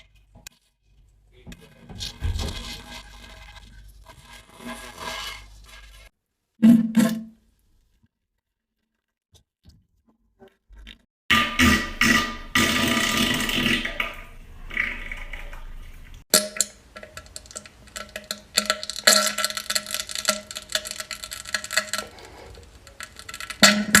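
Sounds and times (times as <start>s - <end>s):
person farting: 11.4s - 14.2s
short rasps and pops: 16.3s - 24.0s.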